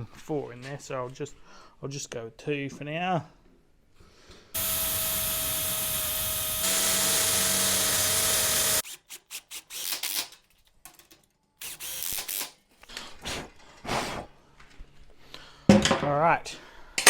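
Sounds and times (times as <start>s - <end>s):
power drill motor running: 4.6s - 8.9s.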